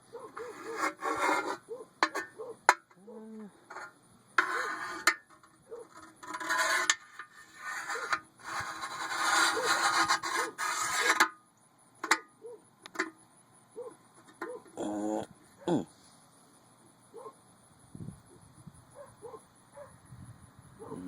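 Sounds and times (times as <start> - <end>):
close rubbing and scraping: 0.2 - 2.3, 3.7 - 11.4.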